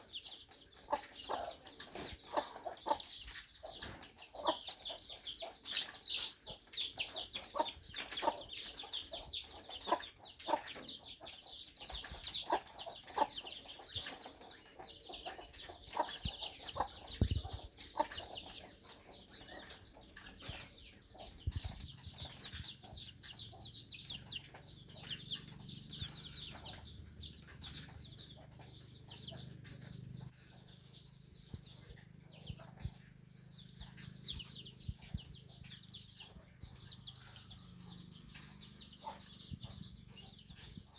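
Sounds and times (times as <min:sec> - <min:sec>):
chickens clucking: 0:00.0 - 0:40.9.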